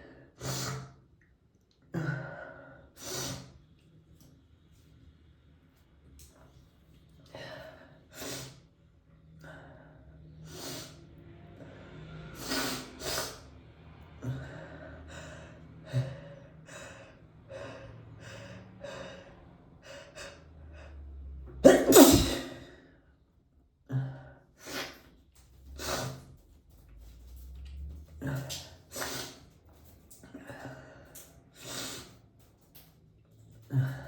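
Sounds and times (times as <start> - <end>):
person sneezing loudly: 21.6 - 22.7.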